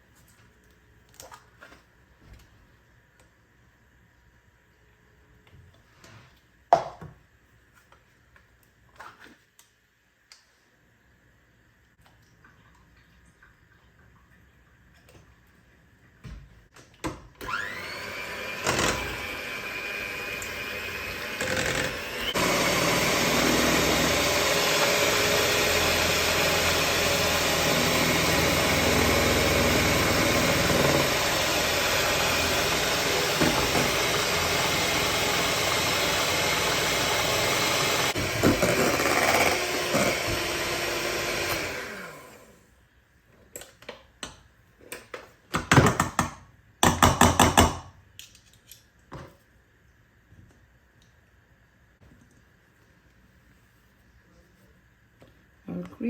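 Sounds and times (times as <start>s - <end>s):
electric hand mixer whirring: 17.4s - 42.6s.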